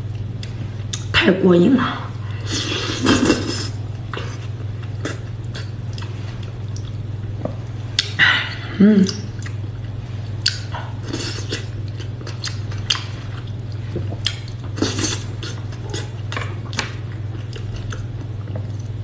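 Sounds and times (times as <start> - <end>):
wet chewing: 2.7 - 7.1, 9.0 - 19.0.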